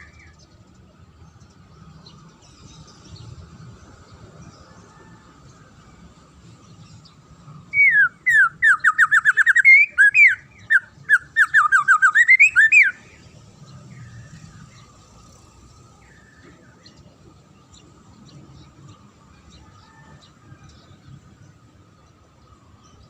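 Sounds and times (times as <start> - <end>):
songbird whistling: 7.7 - 13.3.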